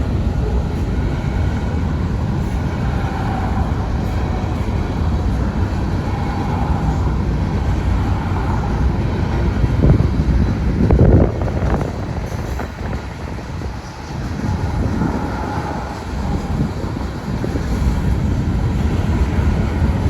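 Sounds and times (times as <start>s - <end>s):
train wheels rumbling on rail: 0.0s - 20.0s.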